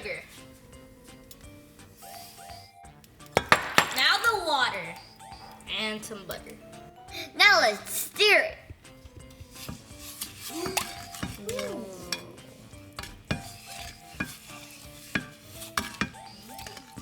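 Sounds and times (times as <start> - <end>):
spoon clinking against pot: 0.0 - 4.3, 9.1 - 17.0
light sizzle: 0.0 - 17.0.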